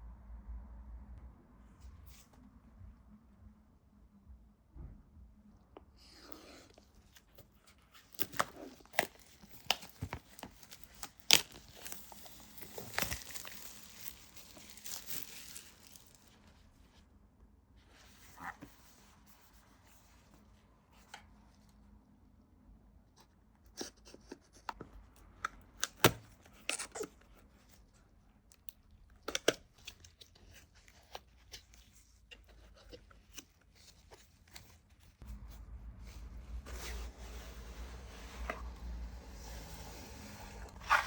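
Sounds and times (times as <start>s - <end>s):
box and wrapping crunching: 7.9s - 16.4s.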